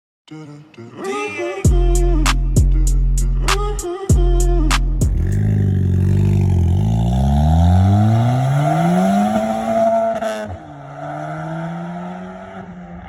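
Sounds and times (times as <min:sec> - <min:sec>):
car engine accelerating: 0:05.0 - 0:13.0.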